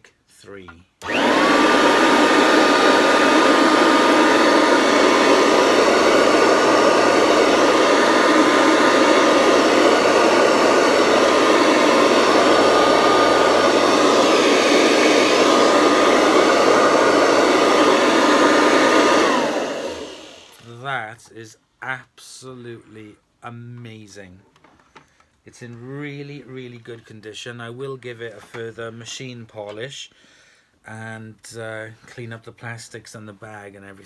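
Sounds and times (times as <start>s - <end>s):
vacuum cleaner running: 1.0s - 20.8s.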